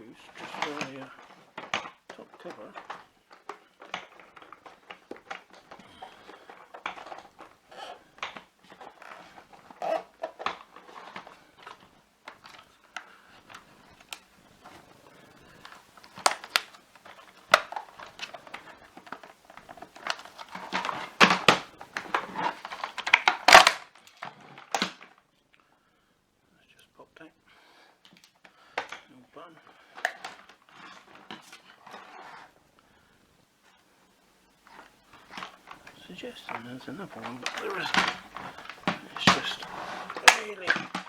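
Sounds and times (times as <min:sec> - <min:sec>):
plastic cracking and snapping: 0:00.0 - 0:25.7, 0:27.8 - 0:33.1, 0:34.6 - 0:41.0
small plastic clicks and rattles: 0:00.2 - 0:25.2, 0:34.6 - 0:41.0.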